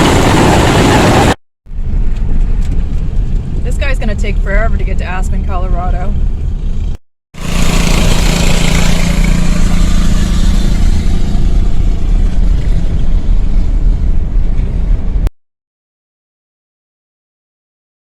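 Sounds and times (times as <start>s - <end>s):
small engine running: 7.4s - 13.4s.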